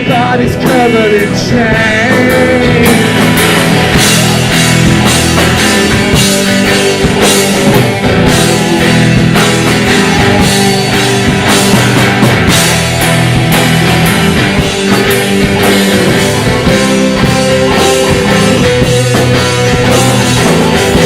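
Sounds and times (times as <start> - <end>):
rock band playing: 0.0 - 21.0.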